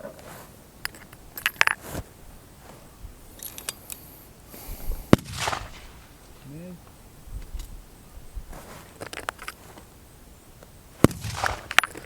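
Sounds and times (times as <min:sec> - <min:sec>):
rifle bolt clicks and clinks: 0:00.8 - 0:01.8, 0:03.4 - 0:04.0
sharp crack: 0:05.0 - 0:06.8, 0:11.0 - 0:12.0.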